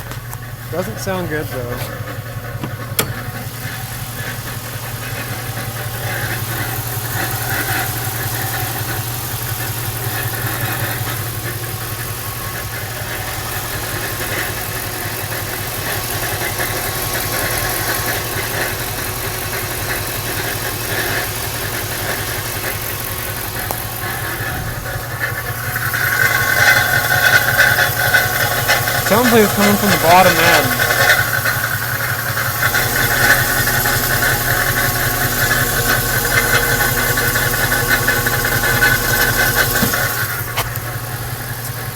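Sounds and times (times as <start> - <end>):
car engine idling with rattle: 0.0 - 41.9.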